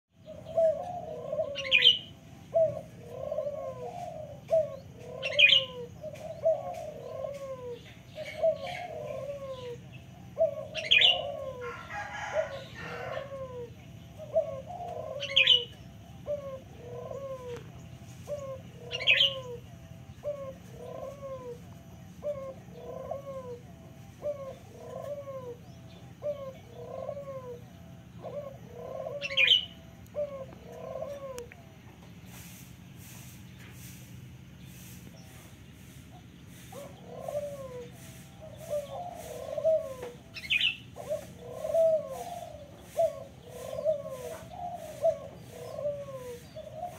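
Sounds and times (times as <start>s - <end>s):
bird chirping: 0.1s - 33.9s, 34.5s - 46.9s
dove cooing: 0.1s - 46.9s
rustle: 0.2s - 46.9s.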